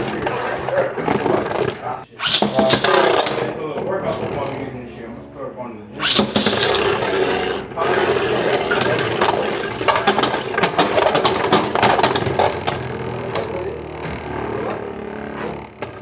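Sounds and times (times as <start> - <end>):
spinning tops whirring: 6.0 - 16.0
tops clashing with sharp clicks: 6.0 - 16.0.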